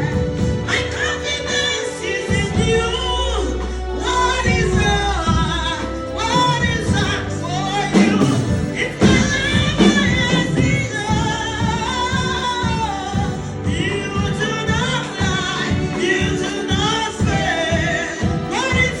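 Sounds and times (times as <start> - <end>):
voices singing gospel: 0.0 - 19.0
band playing steady beat: 4.4 - 19.0.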